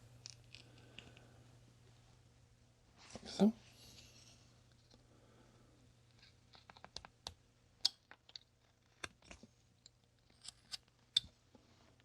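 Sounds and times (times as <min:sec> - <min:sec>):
knife carving wood: 0:10.2 - 0:11.3.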